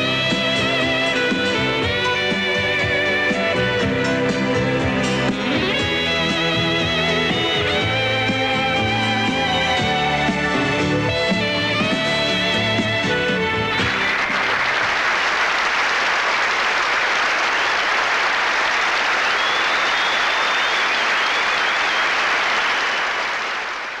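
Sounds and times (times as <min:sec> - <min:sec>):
audience applauding: 0:12.8 - 0:24.0
crowd whistle: 0:17.4 - 0:24.0.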